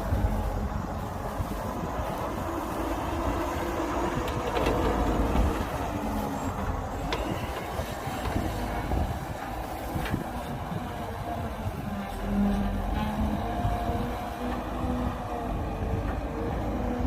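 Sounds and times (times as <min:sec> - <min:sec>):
heavy diesel machinery rumbling: 0:00.0 - 0:17.0.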